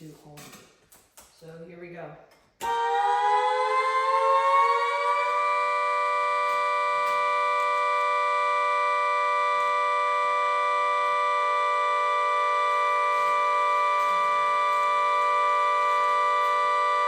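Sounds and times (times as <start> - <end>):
air raid siren two-note chord: 2.6 - 17.0
fainter lower steady tone: 5.6 - 17.0.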